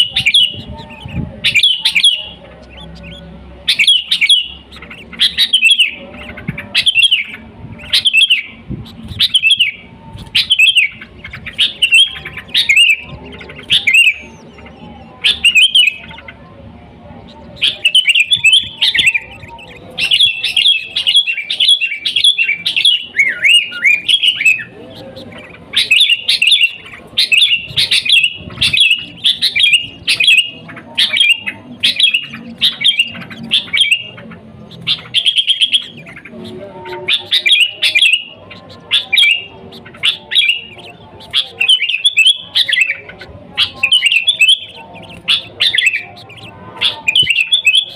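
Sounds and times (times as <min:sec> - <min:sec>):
bird chirping: 0:00.0 - 0:47.9.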